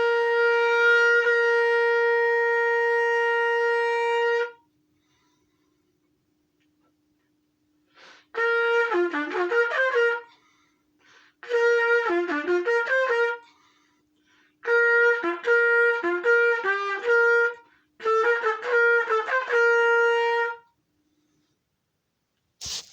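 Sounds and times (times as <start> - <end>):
solo trumpet playing: 0.0 - 4.6, 8.3 - 10.3, 11.4 - 13.4, 14.6 - 20.7
faint steady hum: 0.0 - 22.9.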